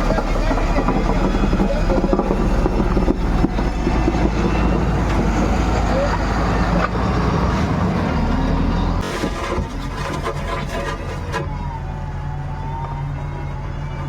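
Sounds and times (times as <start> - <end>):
heavy machine engine rumbling: 0.0 - 14.0.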